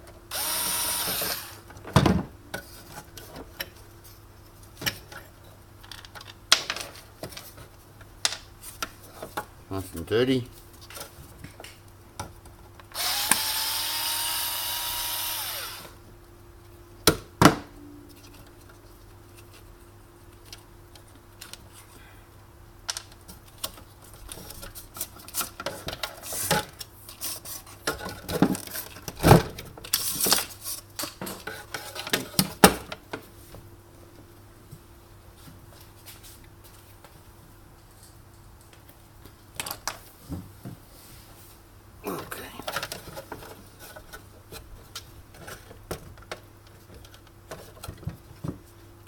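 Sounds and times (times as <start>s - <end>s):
electric drill whining: 0.3s - 1.6s, 12.9s - 16.0s.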